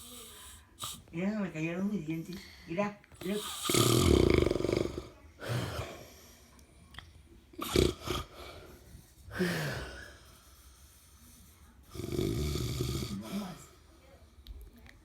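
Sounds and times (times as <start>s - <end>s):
man snoring: 3.4s - 5.1s, 7.6s - 8.3s, 12.0s - 13.5s.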